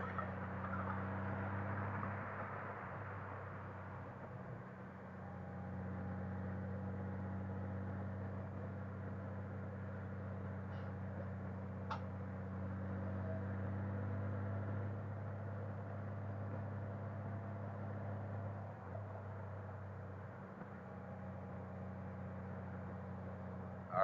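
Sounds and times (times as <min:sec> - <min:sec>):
motorcycle engine running: 0:00.0 - 0:24.0
road and wind noise: 0:00.0 - 0:24.0.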